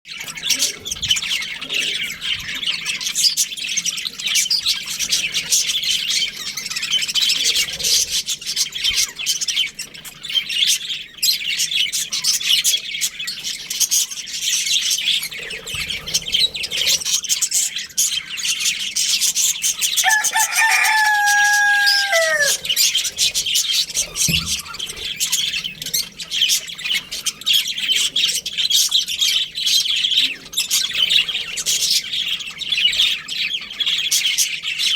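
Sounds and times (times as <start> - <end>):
budgerigars chirping: 0.1 - 34.9
low drawn-out bird call: 20.0 - 23.0.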